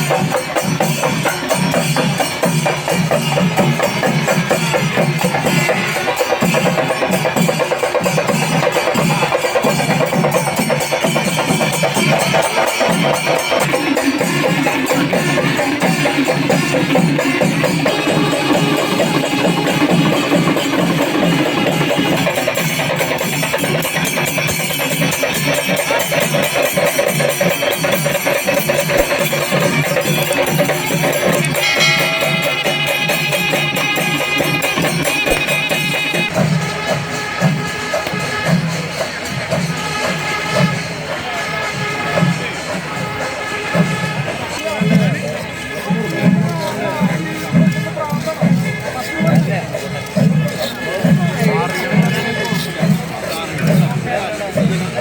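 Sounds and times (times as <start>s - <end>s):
cymbals clashing: 0.0s - 55.0s
drums beaten in fast rhythm: 0.0s - 55.0s
high held tone: 28.8s - 36.3s.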